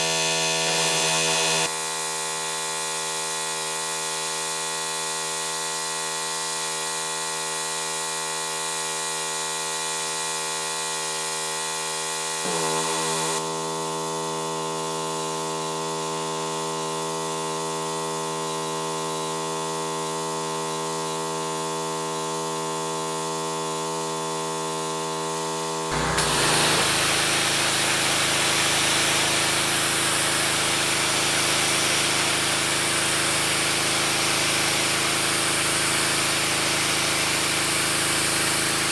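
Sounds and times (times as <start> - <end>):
water jetting onto deck: 25.9 - 35.1
pressure washer humming: 25.9 - 38.9.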